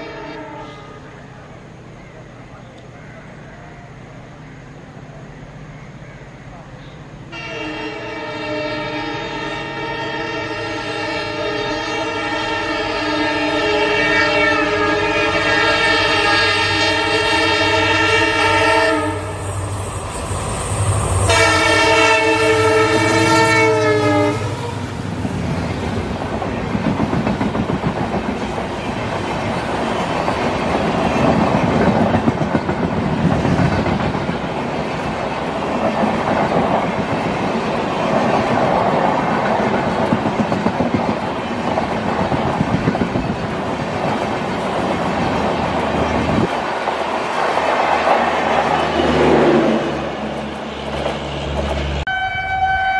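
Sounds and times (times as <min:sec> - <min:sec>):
diesel locomotive horn: 0:00.0 - 0:01.1, 0:07.3 - 0:25.5, 0:48.6 - 0:52.9
train wheels clattering over rails: 0:19.5 - 0:52.0.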